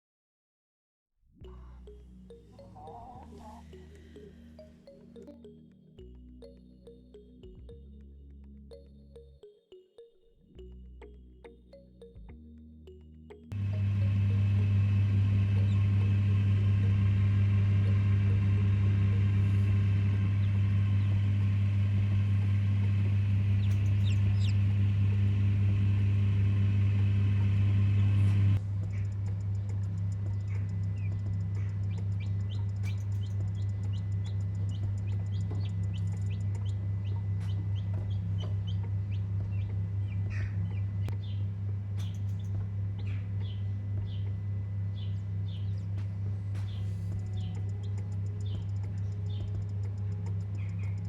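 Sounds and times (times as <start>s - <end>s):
low electrical hum: 13.5s - 51.0s.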